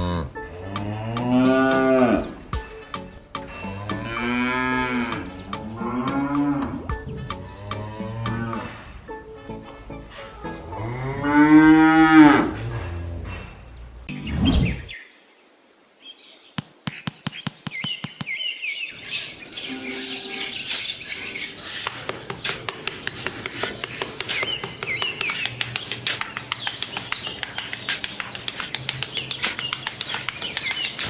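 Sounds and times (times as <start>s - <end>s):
birds chirping: 0.0s - 31.0s
sharp clicks and taps: 16.6s - 18.4s, 21.8s - 31.0s.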